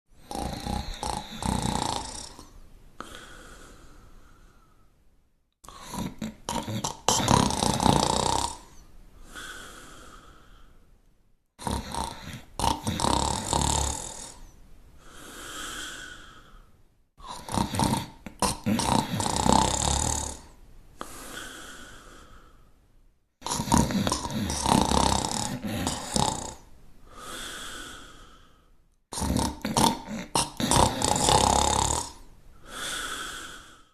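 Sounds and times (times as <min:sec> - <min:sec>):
rattling snore: 0:00.2 - 0:02.5, 0:05.7 - 0:08.7, 0:11.6 - 0:14.4, 0:17.3 - 0:20.5, 0:23.4 - 0:26.7, 0:29.1 - 0:32.2.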